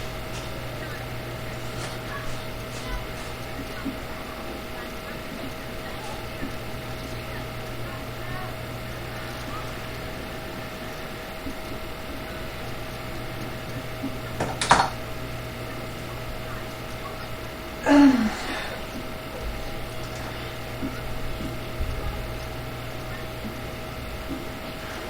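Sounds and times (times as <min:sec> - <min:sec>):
low hum: 0:00.0 - 0:25.0
person burping: 0:17.8 - 0:18.9.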